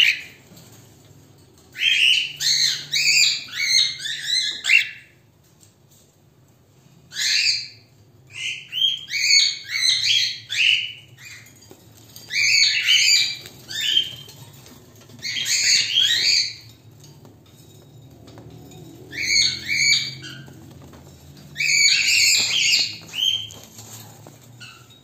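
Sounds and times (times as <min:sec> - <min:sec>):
cockatiel calling and chattering: 0:01.8 - 0:05.1, 0:07.1 - 0:11.5, 0:12.2 - 0:14.5, 0:15.2 - 0:16.8, 0:19.1 - 0:20.8, 0:21.6 - 0:24.0.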